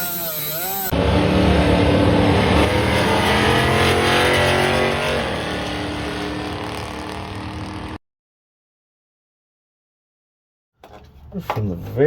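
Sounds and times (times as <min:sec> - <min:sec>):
power tool cutting sheet metal: 0:00.0 - 0:08.0.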